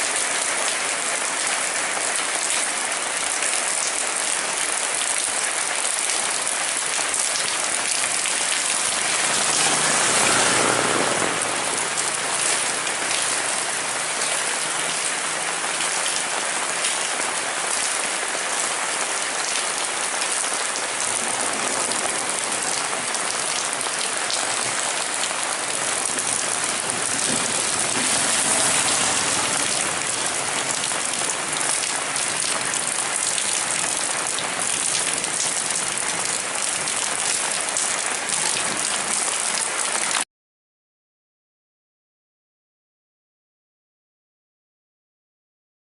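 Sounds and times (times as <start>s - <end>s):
heavy rain hissing: 4.4s - 39.1s.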